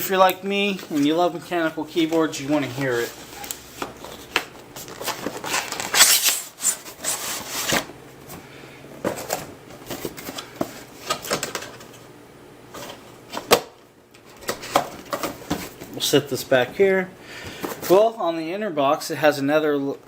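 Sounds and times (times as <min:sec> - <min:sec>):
cardboard sliding and rubbing: 0:04.8 - 0:07.9.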